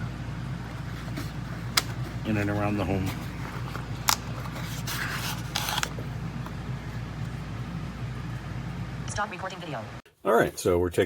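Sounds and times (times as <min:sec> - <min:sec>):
steady low hum: 0:00.0 - 0:11.0
rubbing and rustling: 0:00.6 - 0:08.4.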